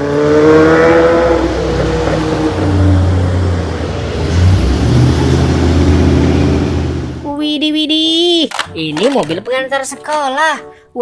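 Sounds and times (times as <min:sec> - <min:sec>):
vehicle engine: 0:00.0 - 0:07.2.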